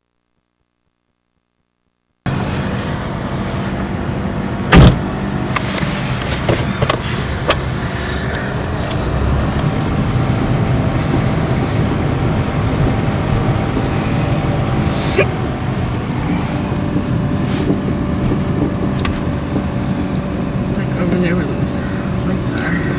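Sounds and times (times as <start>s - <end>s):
engine coughing: 2.3s - 19.4s
car engine humming: 2.3s - 22.9s.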